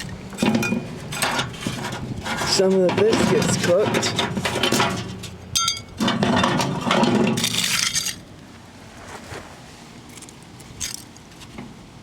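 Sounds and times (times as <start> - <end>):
metal tin scraping and rattling: 0.0 - 8.3
metallic clink: 5.6 - 5.9.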